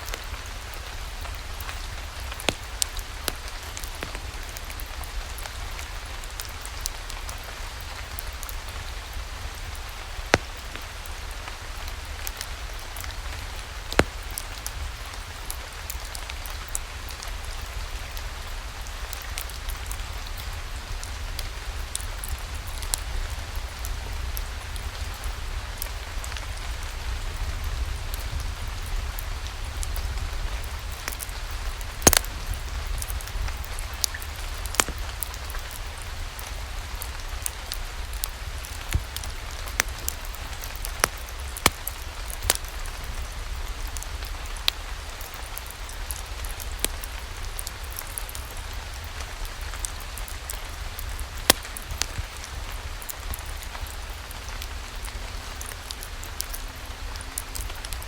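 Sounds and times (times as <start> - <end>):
steady rain: 0.0 - 58.0
sharp pops and clicks: 10.3 - 10.9, 13.9 - 14.6, 32.0 - 33.1, 34.0 - 35.7, 38.7 - 42.8, 50.5 - 52.4.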